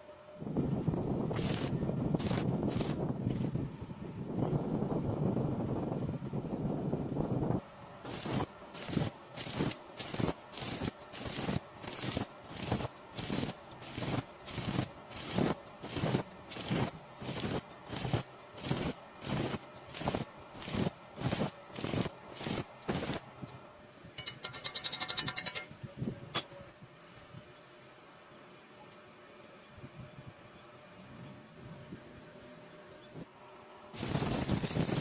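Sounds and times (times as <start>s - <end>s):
welder arc crackling in bursts: 1.2s - 3.4s, 8.0s - 23.5s, 33.9s - 35.0s.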